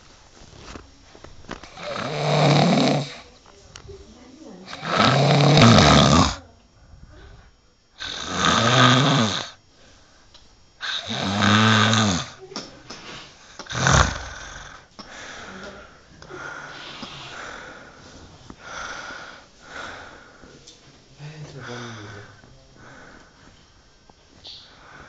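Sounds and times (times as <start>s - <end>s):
quiet breathing: 0.0s - 25.0s
person snoring heavily: 1.6s - 3.2s, 4.6s - 6.4s, 8.0s - 9.6s, 10.8s - 12.4s, 13.6s - 15.6s, 18.6s - 20.4s.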